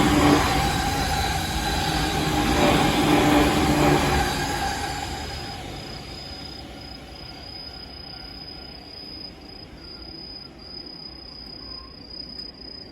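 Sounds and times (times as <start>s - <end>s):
insects trilling: 0.0s - 12.9s.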